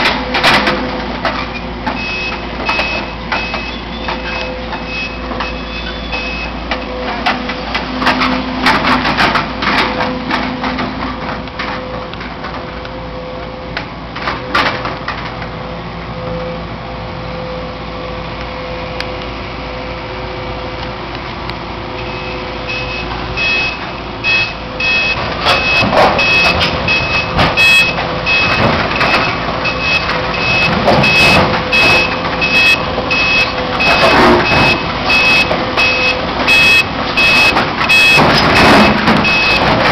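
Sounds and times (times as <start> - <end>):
knocks and clatter: 0.0 - 12.7, 25.1 - 39.9
heavy machinery engine running: 0.0 - 39.9
reversing alarm beeping: 1.9 - 7.1, 22.0 - 39.9.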